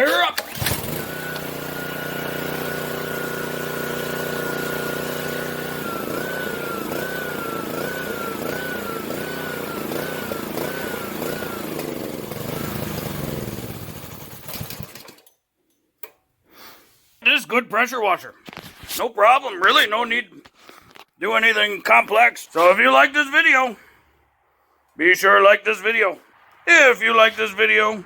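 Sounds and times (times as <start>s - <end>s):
pressure washer engine running: 0.2s - 15.2s.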